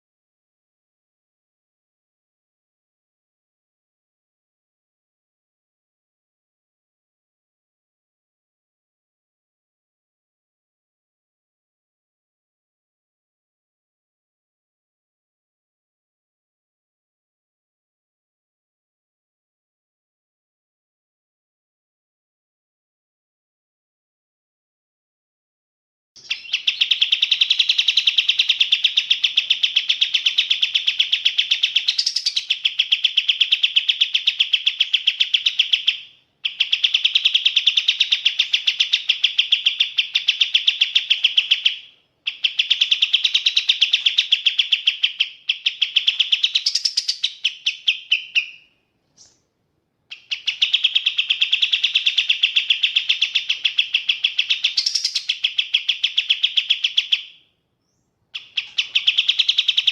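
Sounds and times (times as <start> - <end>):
songbird high chattering song: 26.2 - 49.5, 50.1 - 59.9.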